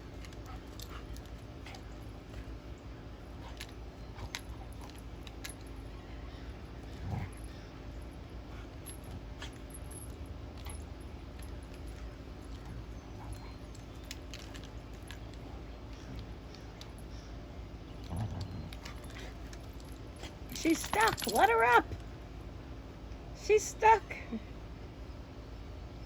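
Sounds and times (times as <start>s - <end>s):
dog tag clicks and jingles: 3.4s - 6.0s, 8.8s - 17.3s, 18.0s - 22.0s.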